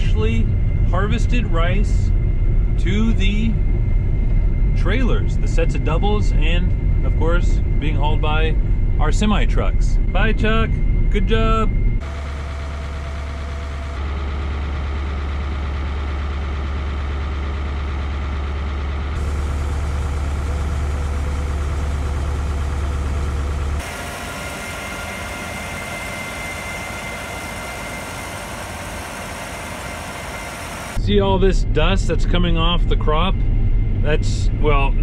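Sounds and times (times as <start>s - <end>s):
combine harvester humming: 11.4s - 33.3s.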